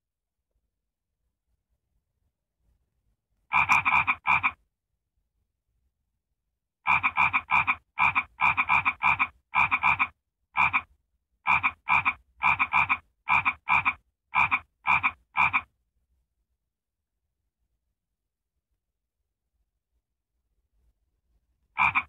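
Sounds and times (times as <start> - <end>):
frog croaking: 3.5 - 4.6, 6.9 - 10.9, 11.5 - 15.7, 21.8 - 22.0.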